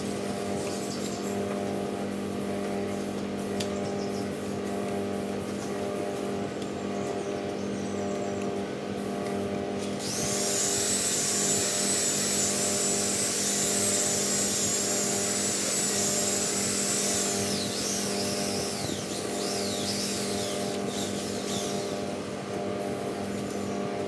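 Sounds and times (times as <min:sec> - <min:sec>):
high-speed power tool whining: 0:09.8 - 0:24.0.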